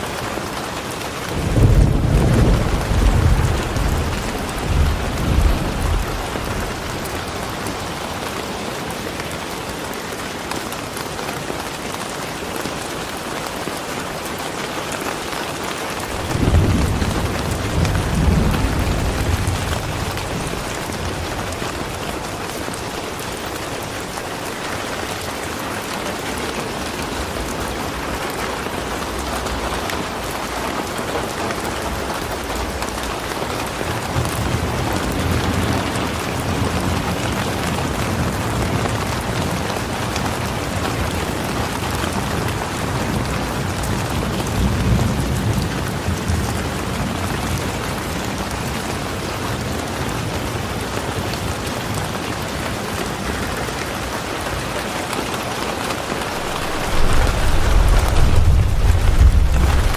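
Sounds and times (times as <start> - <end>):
heavy rain falling: 0.0 - 59.9
low rumble: 56.2 - 59.9.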